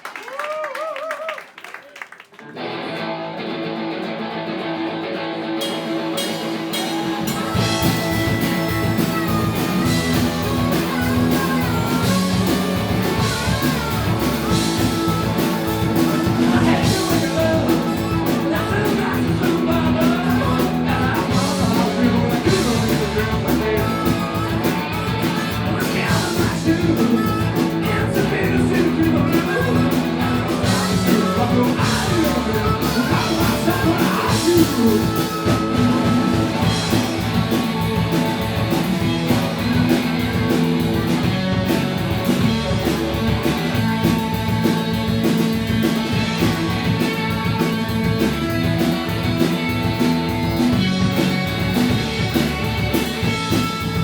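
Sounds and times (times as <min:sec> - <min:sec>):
guitar: 0:02.3 - 0:54.0
person singing: 0:05.6 - 0:41.0
bass and drums: 0:05.6 - 0:54.0.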